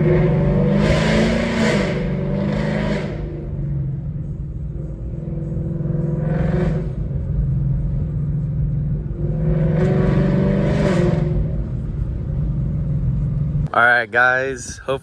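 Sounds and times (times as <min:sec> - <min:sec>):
car exhaust rumble accelerating: 0:00.0 - 0:13.7.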